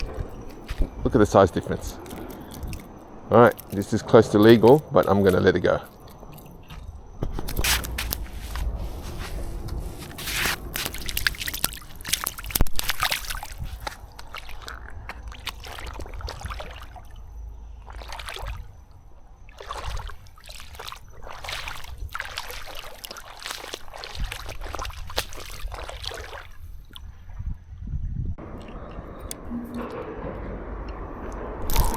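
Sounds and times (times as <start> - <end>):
water sloshing and trickling: 0.0 - 31.9
rustles: 5.9 - 14.1.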